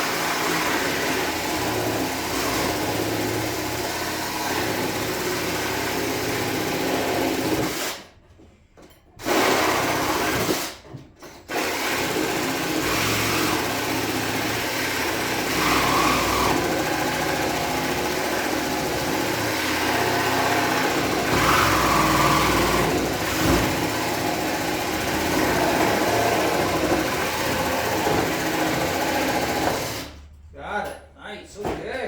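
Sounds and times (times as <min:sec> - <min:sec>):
power tool cutting metal: 0:11.5 - 0:30.2.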